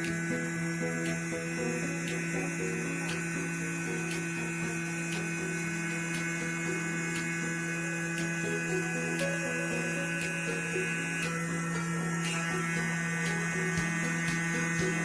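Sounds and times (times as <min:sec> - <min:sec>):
drilling machine electric hum: 0:00.0 - 0:15.0.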